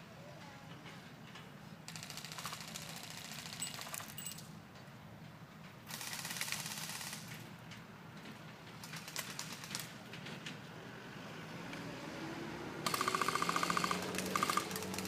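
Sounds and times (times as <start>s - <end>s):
airsoft gun automatic fire: 12.9s - 15.0s.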